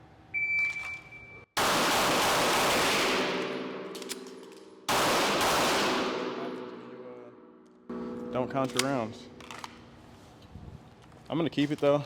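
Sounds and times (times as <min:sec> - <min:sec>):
rapid pistol fire: 0:01.6 - 0:03.9, 0:04.8 - 0:06.9.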